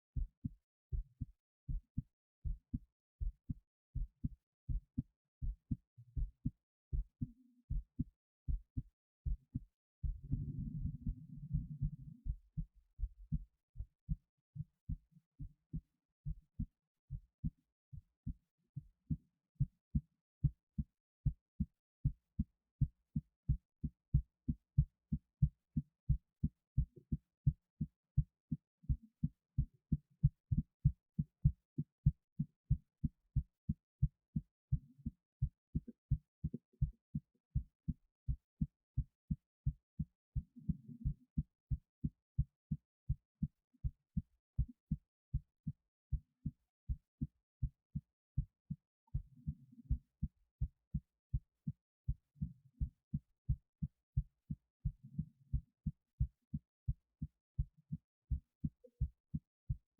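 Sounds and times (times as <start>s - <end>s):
heartbeat thudding: 0.2s - 17.6s, 19.1s - 59.8s.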